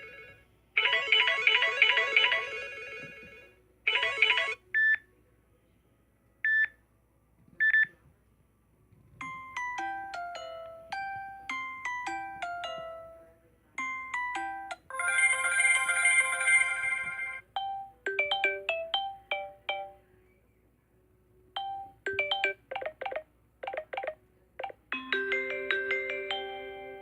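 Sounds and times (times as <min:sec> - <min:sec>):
phone ringtones playing: 0:00.0 - 0:04.6, 0:14.1 - 0:20.0, 0:21.6 - 0:27.0.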